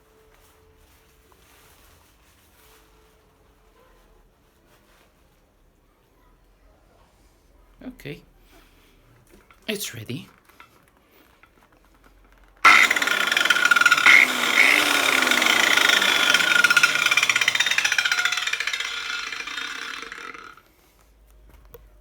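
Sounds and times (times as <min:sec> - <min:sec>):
angle grinder whining: 0:12.6 - 0:20.6.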